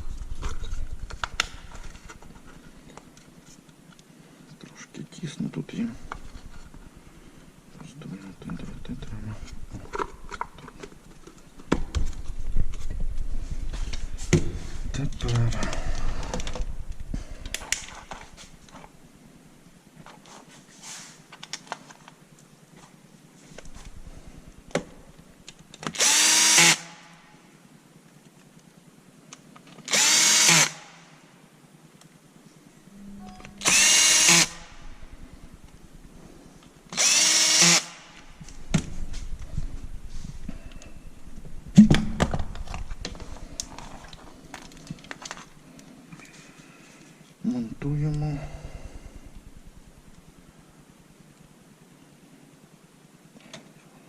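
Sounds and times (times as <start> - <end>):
power drill-driver running: 26.0 - 26.9, 29.9 - 30.8, 33.6 - 34.7, 37.0 - 38.0.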